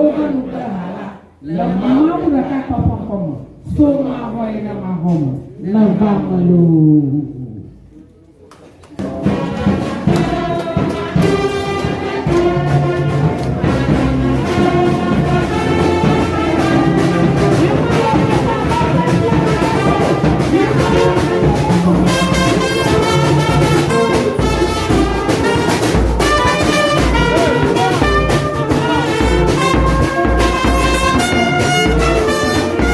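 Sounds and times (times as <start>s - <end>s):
brass band music: 9.0s - 32.9s.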